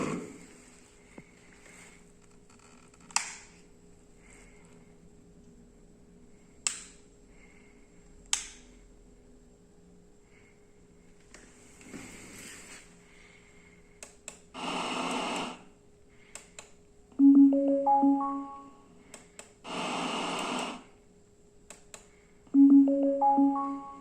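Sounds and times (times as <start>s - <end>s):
electronic jingle of rising tones: 17.2s - 18.7s, 22.6s - 24.0s.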